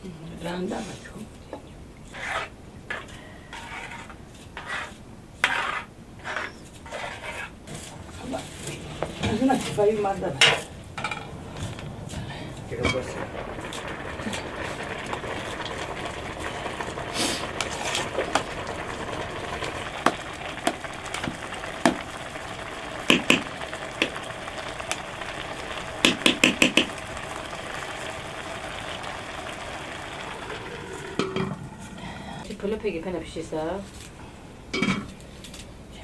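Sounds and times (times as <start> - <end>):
food hissing in a pot: 3.1 - 32.5.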